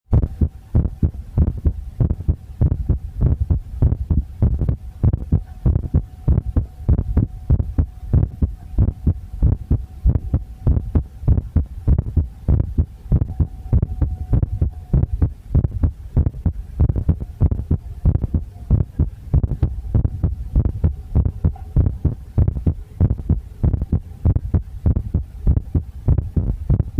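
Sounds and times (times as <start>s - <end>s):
faint steady hum: 0.1s - 26.9s
heartbeat thumping: 0.1s - 26.9s.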